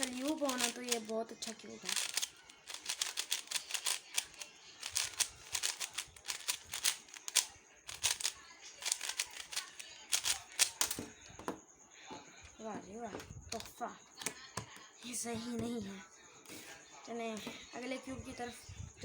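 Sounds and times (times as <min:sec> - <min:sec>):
puzzle cube clicking: 0:00.0 - 0:11.0.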